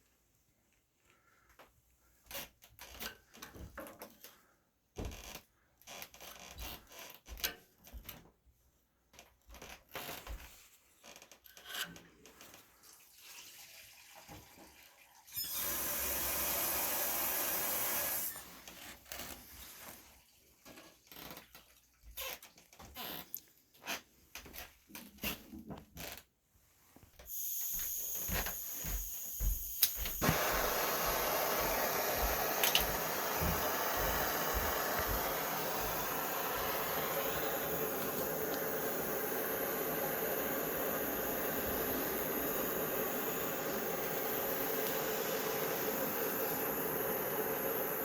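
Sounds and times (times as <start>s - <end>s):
loud steady hiss: 27.3s - 48.0s
tools clicking and tapping: 32.6s - 34.2s.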